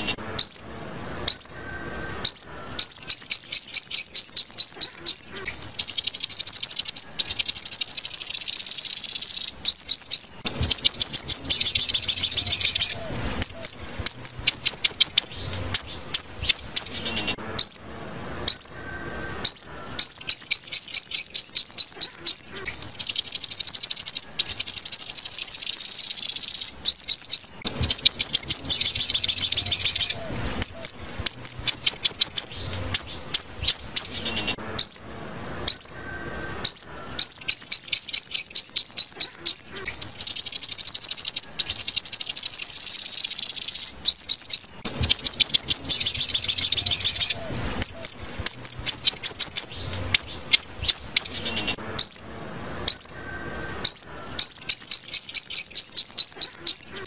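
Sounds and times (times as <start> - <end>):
bird song with high trills: 0.0 - 57.0.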